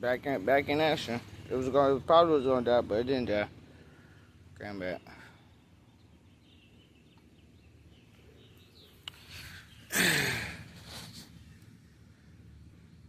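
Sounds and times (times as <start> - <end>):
faint bird chirps: 3.6 - 13.0.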